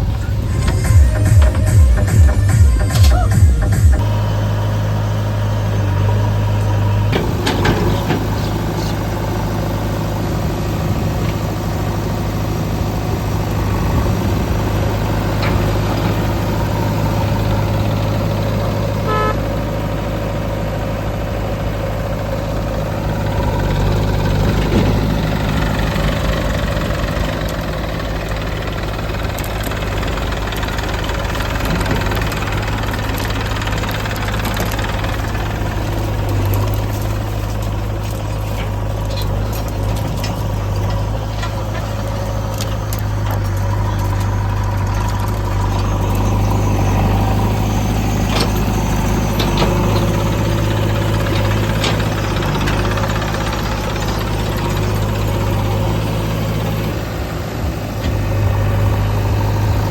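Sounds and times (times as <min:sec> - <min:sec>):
diesel engine droning: 0:00.0 - 0:59.9
short horn toot: 0:19.0 - 0:19.5.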